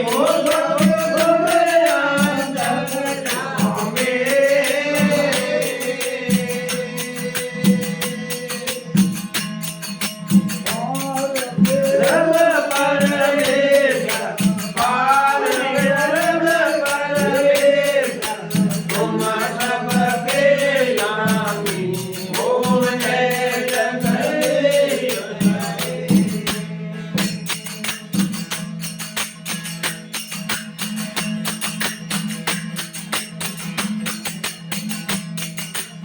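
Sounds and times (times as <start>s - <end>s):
man singing devotional song: 0.0s - 27.6s
jingling metal percussion: 0.0s - 36.0s.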